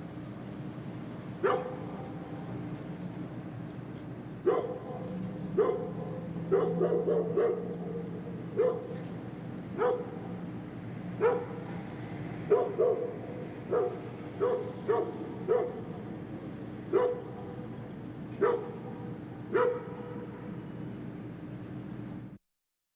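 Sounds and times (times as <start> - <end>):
low background hum: 0.0 - 22.4
distant dogs barking: 1.4 - 2.4, 4.4 - 20.6.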